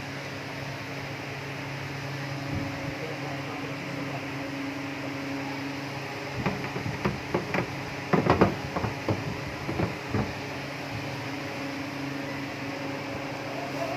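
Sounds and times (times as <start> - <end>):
washing machine humming: 0.0 - 13.9
sharp clicks and knocks: 6.4 - 10.5.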